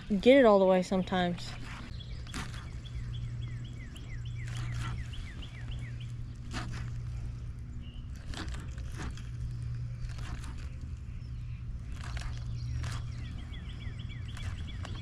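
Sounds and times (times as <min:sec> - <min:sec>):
steady low hum: 0:00.0 - 0:15.0
bird chirping: 0:00.1 - 0:15.0
clicks and rustles: 0:03.8 - 0:11.1, 0:11.7 - 0:13.5.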